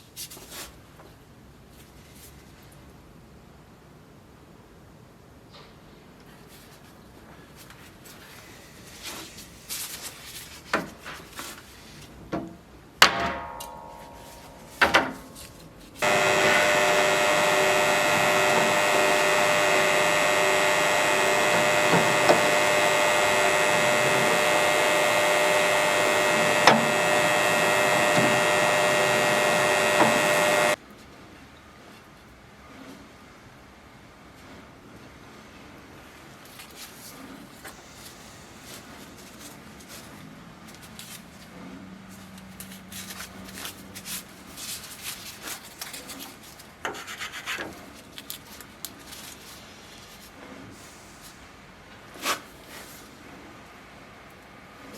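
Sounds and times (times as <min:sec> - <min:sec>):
short metallic clang: 0:13.2 - 0:15.2
electric power tool running: 0:16.0 - 0:30.8.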